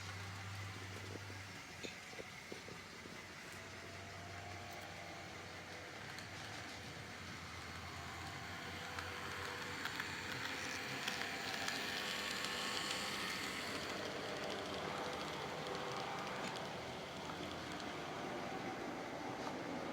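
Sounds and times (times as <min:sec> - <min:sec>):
model train whirring on track: 0:00.0 - 0:19.9
light clicks at rail joints: 0:04.6 - 0:18.1.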